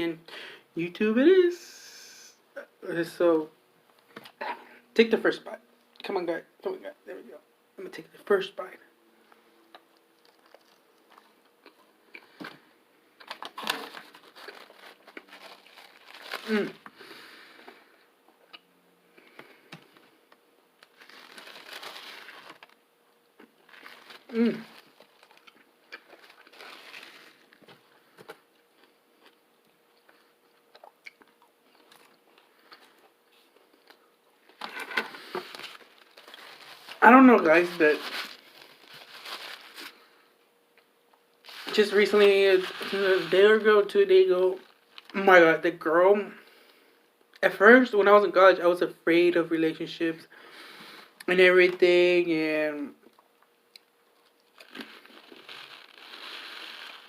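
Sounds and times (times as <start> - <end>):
lip smacking and crinkling: 9.7 - 12.5, 13.2 - 16.9, 23.4 - 34.6, 53.0 - 57.0
crisp crunching: 10.2 - 12.5, 13.2 - 17.1, 20.8 - 22.8, 23.4 - 29.4, 33.7 - 40.1, 41.4 - 45.3, 54.2 - 57.0
person chewing food: 23.4 - 34.1.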